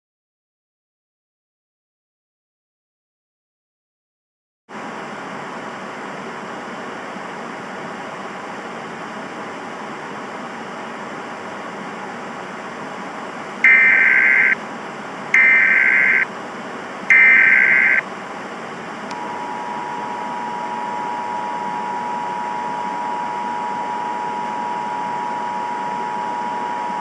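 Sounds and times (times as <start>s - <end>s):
constant hiss: 13.6s - 14.6s, 15.4s - 16.2s, 17.1s - 18.0s
data header bursts: 13.6s - 14.6s, 15.4s - 16.2s, 17.1s - 18.0s
two-tone attention signal: 13.7s - 14.6s, 15.4s - 16.2s, 17.1s - 18.0s.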